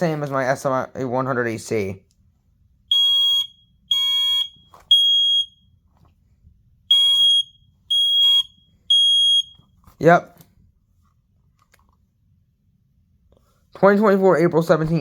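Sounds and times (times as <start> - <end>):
smoke alarm beeping: 2.8 - 5.8, 6.8 - 9.8.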